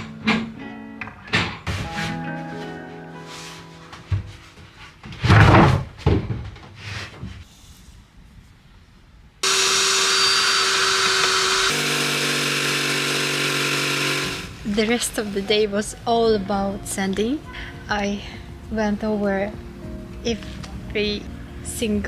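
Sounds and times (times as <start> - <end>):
wooden knocks and thuds: 5.0 - 7.4
electric sander running: 9.4 - 14.7.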